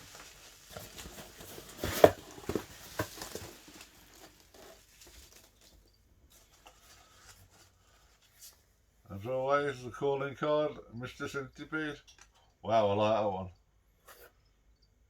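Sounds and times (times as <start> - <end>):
packing peanuts rustling: 0.0 - 5.8.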